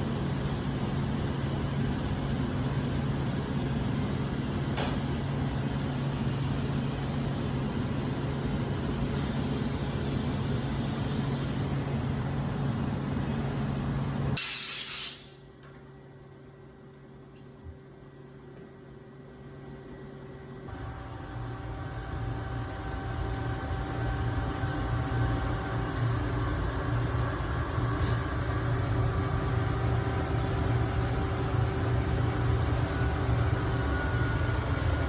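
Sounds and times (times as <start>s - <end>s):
steady machine hum: 0.0s - 35.0s
spraying air hiss: 14.4s - 15.4s.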